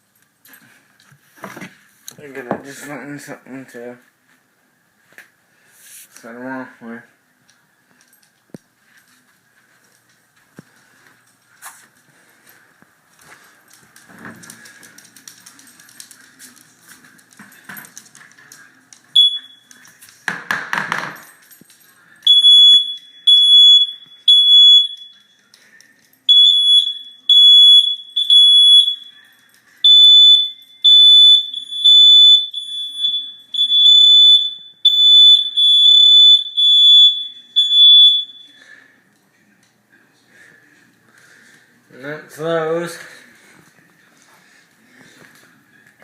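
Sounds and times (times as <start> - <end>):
smoke alarm beeping: 19.1 - 19.8, 22.2 - 25.4, 26.3 - 38.7.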